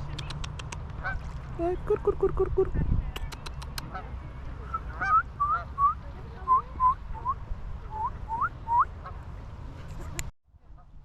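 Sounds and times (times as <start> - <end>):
waterfowl calling: 4.7 - 5.9.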